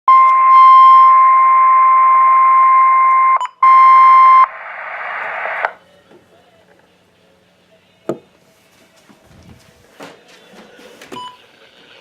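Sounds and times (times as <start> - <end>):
radio static: 4.2 - 5.8.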